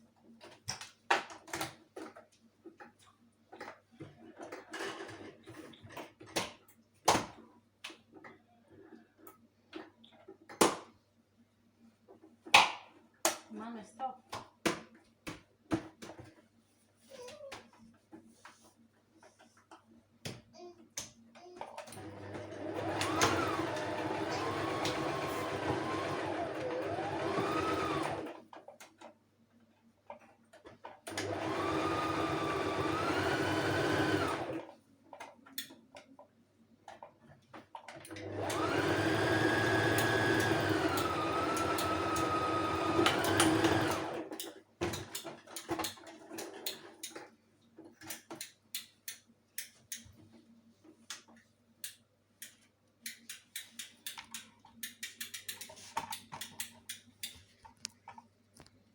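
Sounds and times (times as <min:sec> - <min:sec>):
sewing machine motor whine: 0:21.9 - 0:28.4, 0:31.1 - 0:34.7, 0:38.2 - 0:44.3
light clicks and ticks: 0:51.1 - 0:58.8.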